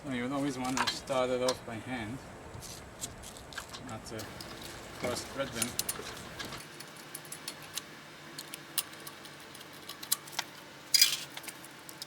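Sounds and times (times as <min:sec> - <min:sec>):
small metal clicks: 0:03.6 - 0:12.0
metallic rattle: 0:04.2 - 0:06.6.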